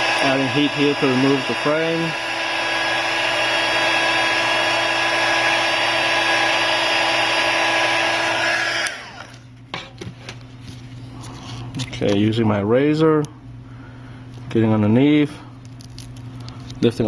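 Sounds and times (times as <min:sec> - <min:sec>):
heat gun blowing: 0:00.0 - 0:09.4.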